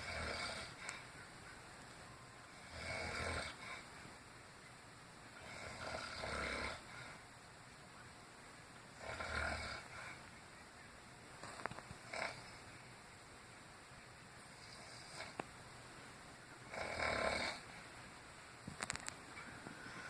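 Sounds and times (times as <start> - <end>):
woman snoring: 0.0 - 0.8, 2.5 - 3.6, 5.4 - 6.9, 9.0 - 9.9, 12.1 - 12.4, 16.7 - 17.6.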